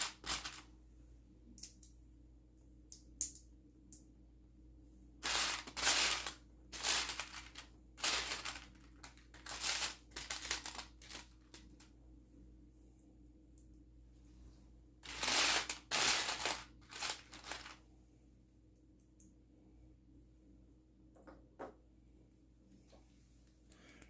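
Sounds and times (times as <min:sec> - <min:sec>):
plastic pieces rattling: 0:00.0 - 0:00.6, 0:05.2 - 0:11.8, 0:15.0 - 0:17.8
plastic pieces clicking: 0:05.2 - 0:11.8, 0:15.0 - 0:17.8.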